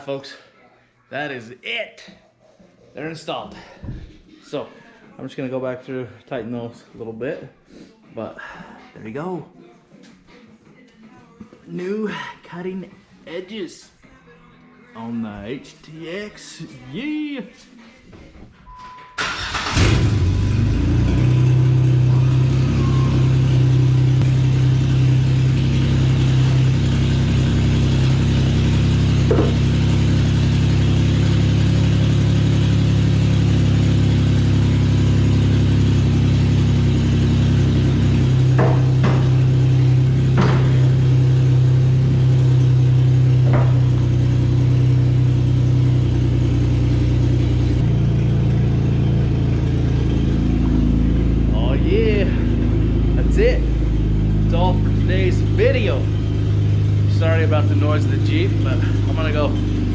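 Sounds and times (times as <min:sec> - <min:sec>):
car engine starting and idling: 0:19.2 - 0:59.9.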